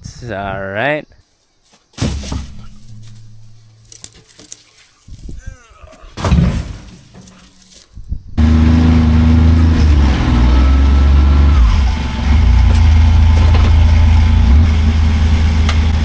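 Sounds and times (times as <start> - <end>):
large diesel engine running: 8.4 - 16.0.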